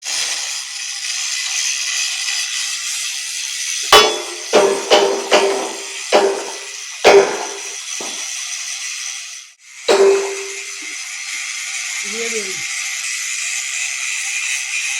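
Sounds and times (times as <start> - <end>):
welding arc crackling hiss: 0.0 - 14.9
hammer blows on steel: 3.9 - 8.2, 9.9 - 10.9.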